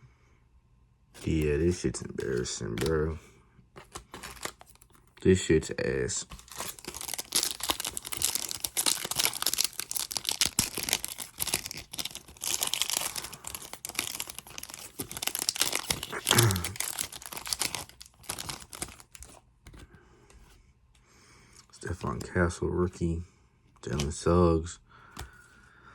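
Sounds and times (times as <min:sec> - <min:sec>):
wrappers tearing and crinkling: 0:03.8 - 0:04.9, 0:06.3 - 0:19.4.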